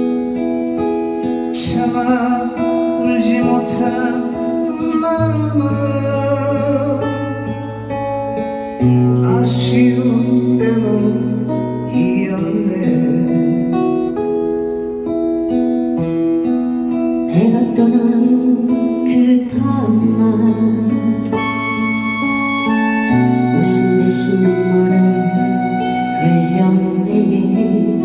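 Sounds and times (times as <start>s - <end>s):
acoustic guitar strumming: 0.0s - 28.0s
held bass and chord notes: 0.0s - 28.0s
person singing: 1.5s - 7.8s, 9.2s - 14.0s, 17.3s - 28.0s.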